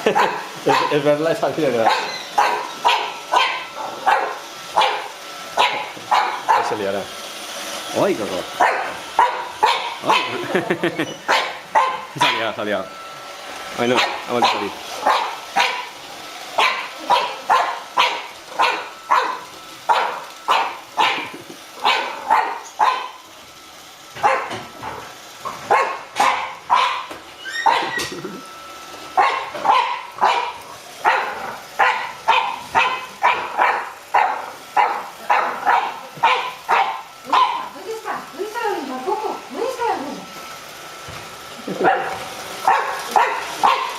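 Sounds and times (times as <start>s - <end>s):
puppy barking: 0.1s - 1.0s, 1.8s - 6.8s, 8.6s - 10.5s, 11.3s - 12.5s, 13.9s - 15.9s, 16.6s - 23.2s, 24.2s - 25.0s, 25.7s - 28.1s, 29.2s - 37.7s, 41.8s - 43.9s.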